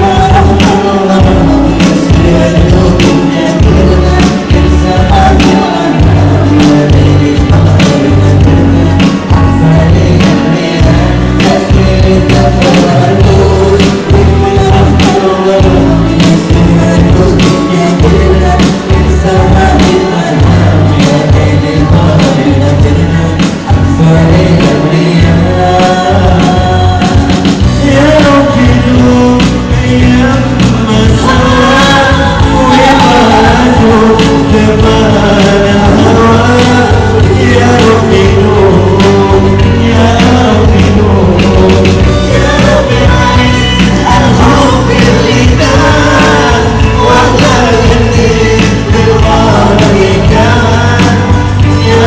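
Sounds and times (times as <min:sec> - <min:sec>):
band playing: 0:00.0 - 0:52.0
person singing: 0:00.0 - 0:52.0
steady percussion beat: 0:00.0 - 0:52.0.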